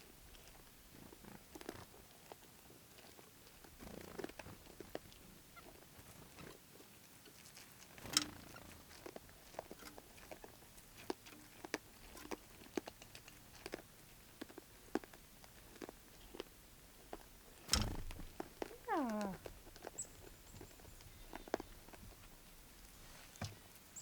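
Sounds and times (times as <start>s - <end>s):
deer chewing corn: 0.2s - 8.0s, 8.6s - 23.9s.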